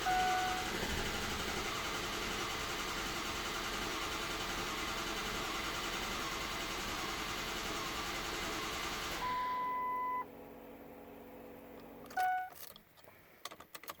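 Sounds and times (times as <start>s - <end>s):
electronic beeps: 0.0s - 0.7s
diesel engine cranking: 0.0s - 9.5s.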